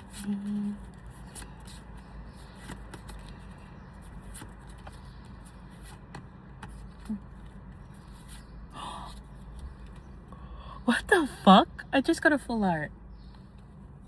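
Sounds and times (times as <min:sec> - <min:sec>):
cards sliding and clicking: 0:00.0 - 0:08.5
steady low hum: 0:00.0 - 0:14.0.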